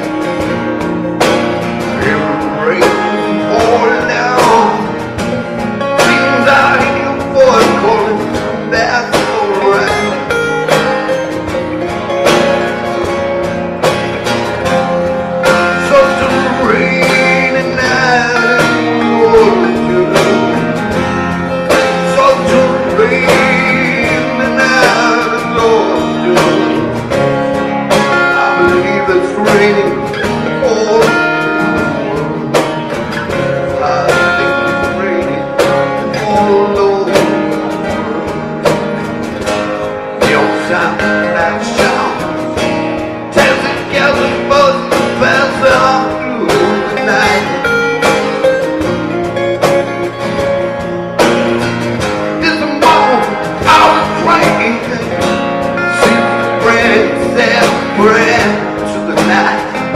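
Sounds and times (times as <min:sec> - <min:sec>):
live band playing slow song: 0:00.0 - 0:59.9
pitch-bending guitar melody: 0:00.0 - 0:59.9
steady drum beat: 0:00.0 - 0:59.9.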